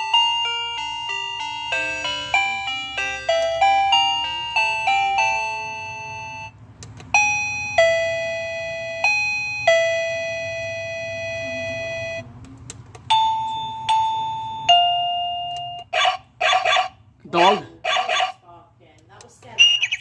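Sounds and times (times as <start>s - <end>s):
doorbell chime tunes: 0.0s - 6.6s, 7.2s - 12.2s, 13.1s - 15.9s.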